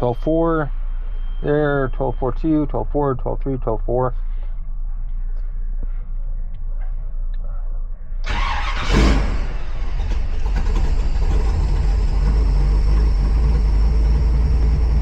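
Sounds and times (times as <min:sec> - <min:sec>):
car engine starting and idling: 0:08.2 - 0:15.0.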